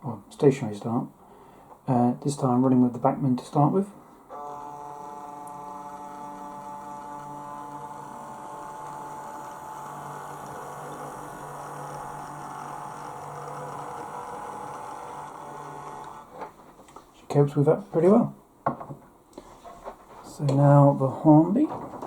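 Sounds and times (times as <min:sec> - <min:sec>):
model train motor whining: 0:04.3 - 0:16.3.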